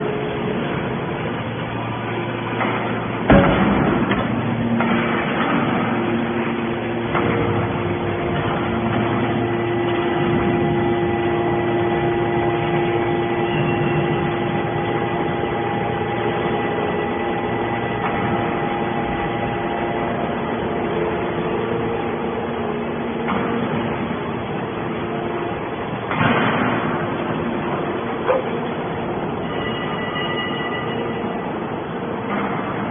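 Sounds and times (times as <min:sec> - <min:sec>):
baler motor and pump hum: 0:00.0 - 0:32.9
loud metallic clank: 0:02.5 - 0:10.7, 0:26.1 - 0:27.2.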